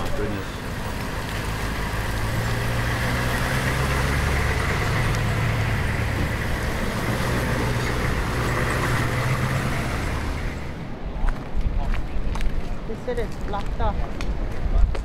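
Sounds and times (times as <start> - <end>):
vehicle engine running: 0.0 - 10.8.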